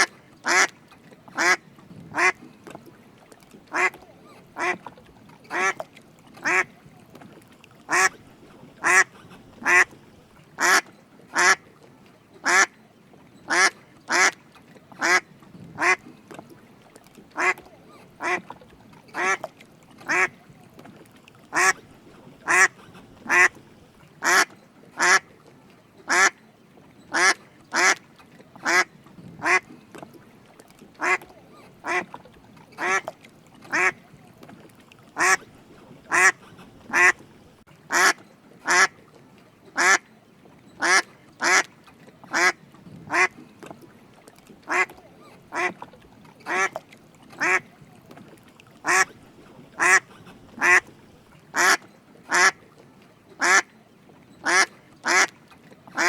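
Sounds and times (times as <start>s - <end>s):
duck quacking: 0.0s - 0.7s, 1.4s - 2.4s, 3.7s - 4.0s, 4.6s - 4.8s, 6.4s - 6.7s, 7.9s - 8.2s, 8.8s - 9.9s, 10.6s - 10.8s, 12.4s - 12.7s, 13.5s - 14.4s, 17.4s - 18.5s, 19.2s - 19.4s, 20.1s - 20.3s, 21.5s - 21.8s, 22.4s - 23.6s, 24.2s - 25.2s, 27.1s - 28.0s, 28.6s - 29.6s, 31.0s - 32.1s, 32.8s - 33.1s, 33.7s - 34.0s, 35.2s - 35.5s, 36.1s - 37.3s, 37.9s - 38.9s, 40.8s - 41.7s, 42.3s - 43.3s, 44.7s - 45.8s, 47.4s - 47.6s, 48.8s - 49.2s, 49.8s - 50.9s, 51.6s - 52.6s, 53.4s - 53.6s, 54.4s - 55.3s.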